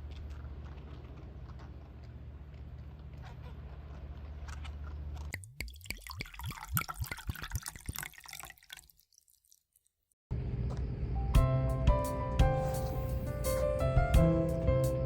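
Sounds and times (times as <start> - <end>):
water splashing and dripping: 5.3 - 9.9.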